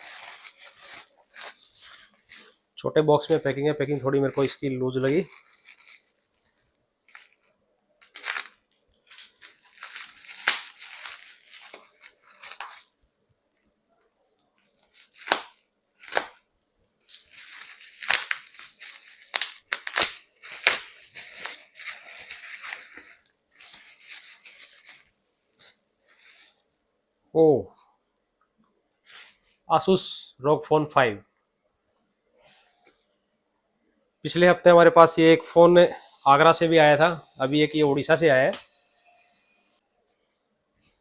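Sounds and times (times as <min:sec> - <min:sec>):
tape and wrapping tearing: 0:00.0 - 0:02.6, 0:04.4 - 0:13.0, 0:14.8 - 0:26.6, 0:29.0 - 0:29.6.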